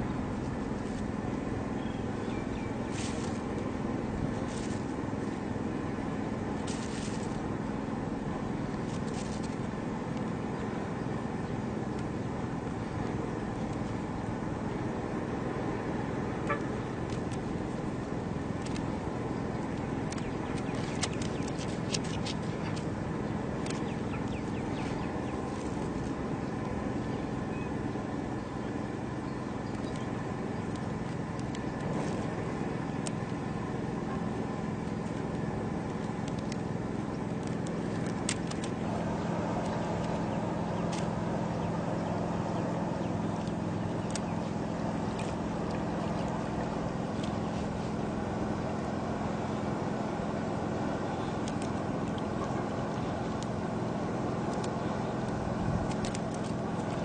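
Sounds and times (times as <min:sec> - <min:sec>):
motor humming: 0:00.0 - 0:57.0.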